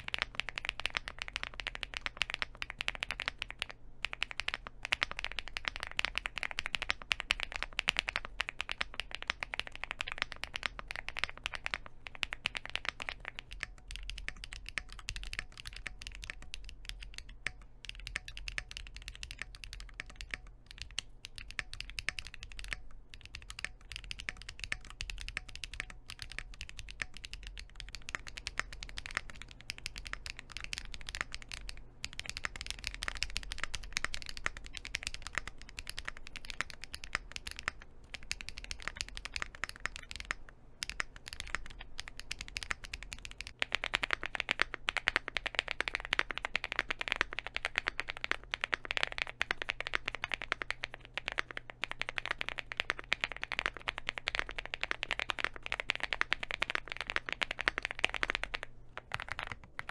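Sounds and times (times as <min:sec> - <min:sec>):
mechanical keyboard typing: 0:00.0 - 0:59.9.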